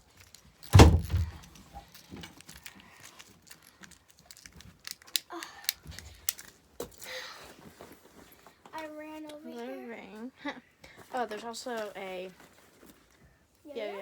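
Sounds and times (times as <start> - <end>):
plastic toys clicking and rattling: 0.0 - 7.1
thump: 0.7 - 1.4.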